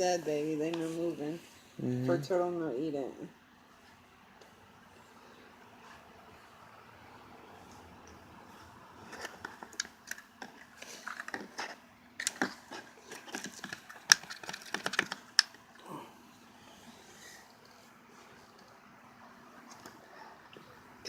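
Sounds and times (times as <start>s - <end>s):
turtle beak and shell clicking: 13.3s - 15.6s.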